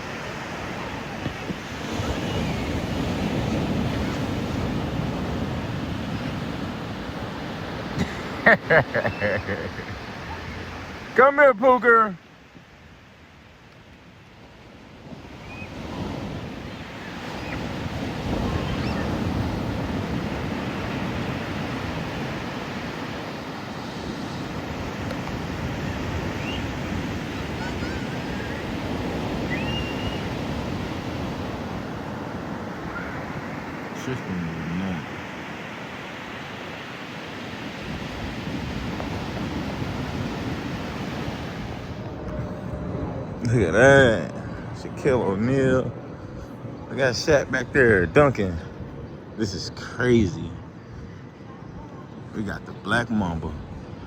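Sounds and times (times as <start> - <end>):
ocean surf on beach: 0.0 - 54.0.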